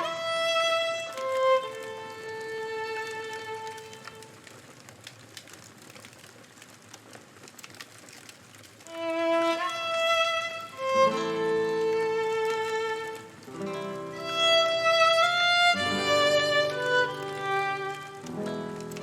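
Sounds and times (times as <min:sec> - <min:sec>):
slow violin music: 0:00.0 - 0:04.5, 0:08.9 - 0:19.0
faint campfire crackling: 0:00.0 - 0:19.0
lower strings playing: 0:09.1 - 0:19.0.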